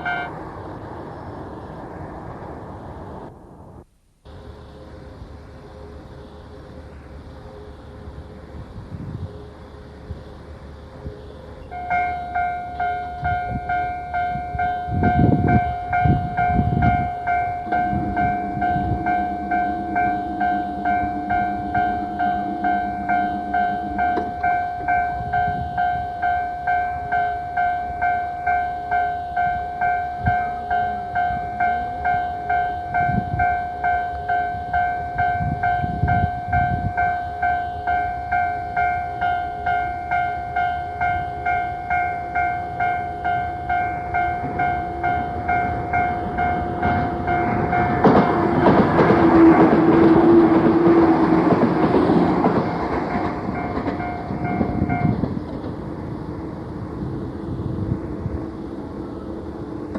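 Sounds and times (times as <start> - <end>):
level-crossing alarm: 0.0 - 0.4, 4.3 - 55.3
low rumbles: 0.0 - 28.0
steady low drone: 0.0 - 55.2.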